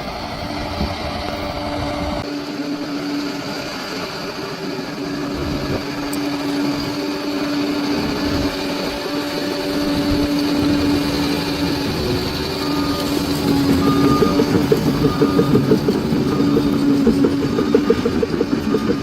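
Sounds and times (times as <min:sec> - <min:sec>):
bulldozer diesel engine droning: 0:00.0 - 0:19.0.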